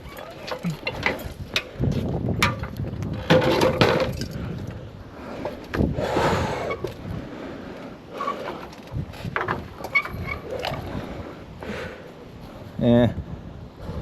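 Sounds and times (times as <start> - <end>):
timber knocking and clattering: 0.0 - 4.4, 8.2 - 11.0.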